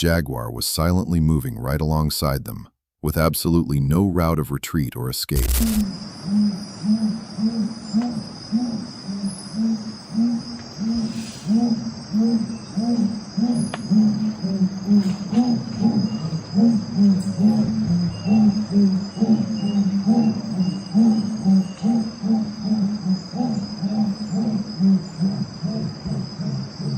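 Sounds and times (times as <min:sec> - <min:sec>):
crickets droning: 0:00.0 - 0:26.9
low repeating call: 0:04.9 - 0:07.6.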